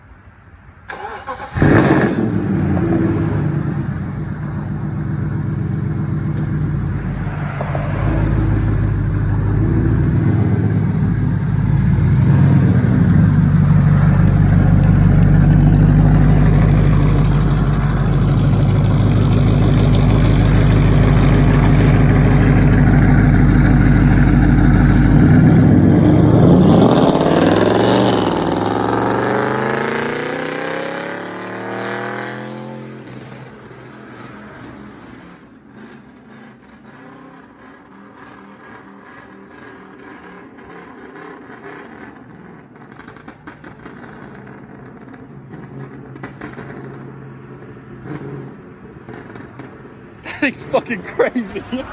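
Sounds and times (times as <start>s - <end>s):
steady engine note: 8.4s - 27.7s
car exhaust popping and crackling: 8.6s - 30.9s, 35.7s - 51.5s.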